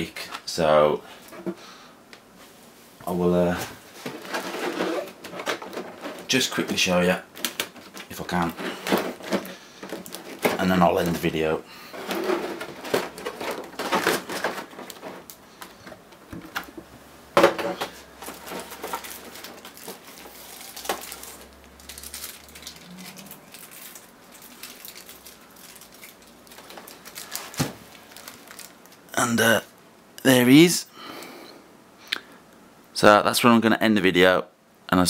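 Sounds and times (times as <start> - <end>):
plastic packaging clicks and rustles: 4.0 - 16.8, 17.4 - 29.6.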